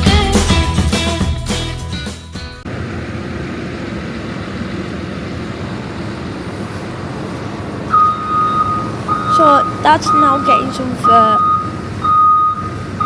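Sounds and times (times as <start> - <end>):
diesel engine running: 0.0 - 13.0
reversing alarm tone: 7.9 - 13.0.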